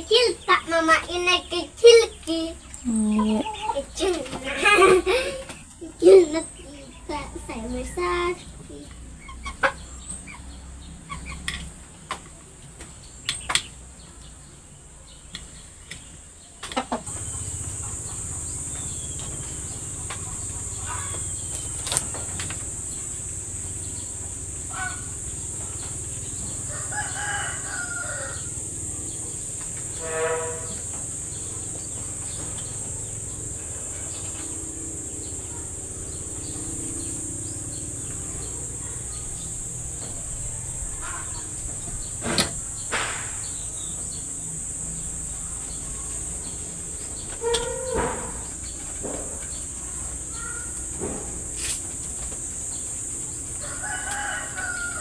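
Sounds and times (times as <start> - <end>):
high insect drone: 0.0 - 9.0, 17.1 - 55.0
chicken clucking: 0.0 - 55.0
rooster crowing: 17.1 - 42.8, 53.3 - 55.0.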